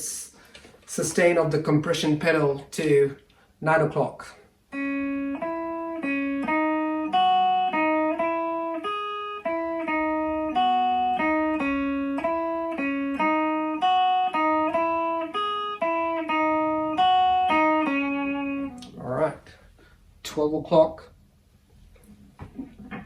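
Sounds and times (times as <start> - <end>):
electric guitar riff: 4.7 - 19.6.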